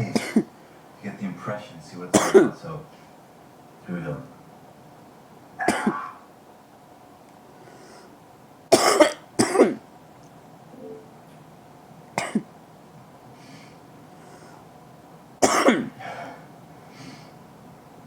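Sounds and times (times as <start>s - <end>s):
man coughing and gagging: 0.0s - 0.5s, 2.1s - 2.6s, 5.6s - 6.2s, 8.7s - 9.8s, 12.2s - 12.5s, 15.4s - 16.0s.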